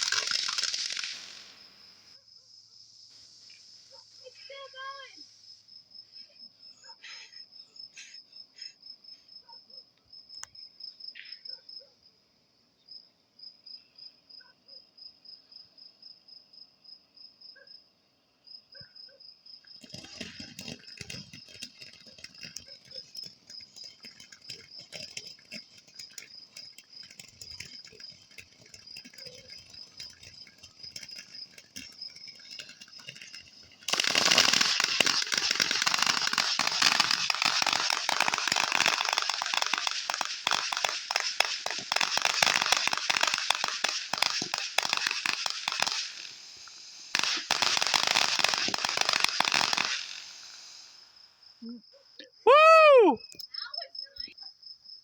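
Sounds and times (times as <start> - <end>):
loud crackling firework: 0.0 - 2.2, 2.8 - 5.6, 19.8 - 51.3
firework crackling and fizzing: 0.0 - 6.4, 19.7 - 51.4
crickets chirping: 0.0 - 55.0.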